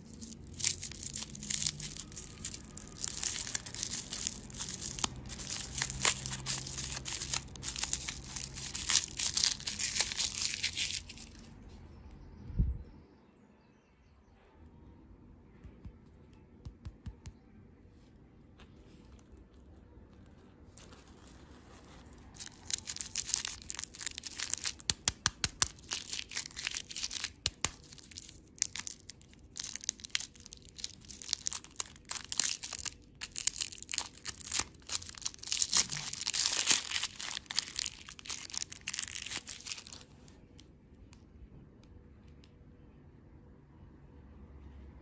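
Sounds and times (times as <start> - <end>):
candy packaging crinkling: 0.0 - 11.6, 18.8 - 40.8.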